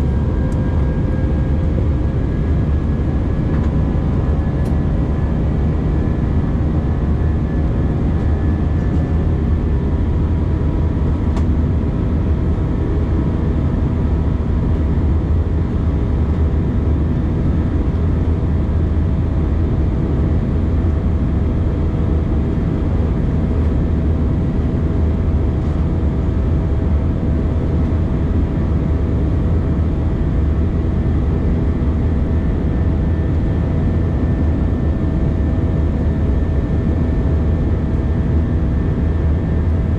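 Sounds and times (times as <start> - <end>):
jet cabin engine roar: 0.0 - 39.9.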